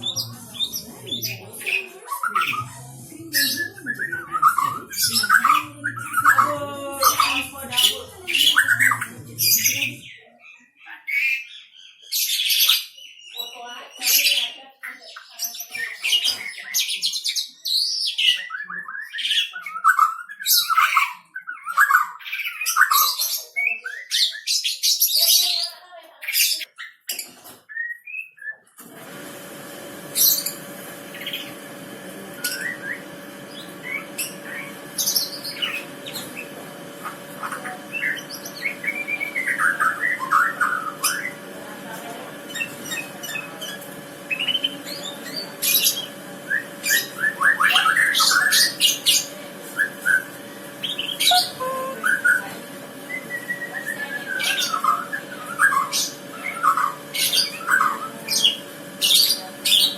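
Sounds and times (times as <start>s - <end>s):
steady hum: 0.0s - 1.7s, 2.5s - 10.1s
bird singing whistled phrases: 49.8s - 58.6s.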